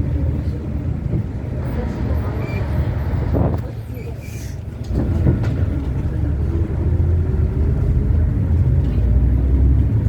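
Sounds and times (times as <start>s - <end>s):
bus engine rumble: 0.0s - 10.0s.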